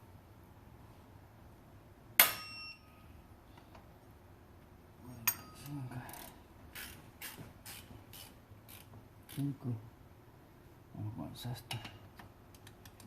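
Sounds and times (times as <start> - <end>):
wrench ratcheting: 6.1 - 9.5.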